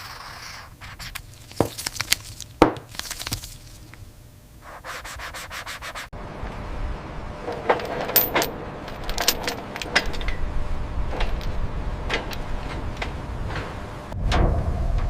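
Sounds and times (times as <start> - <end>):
low steady rumble: 6.1 - 15.0.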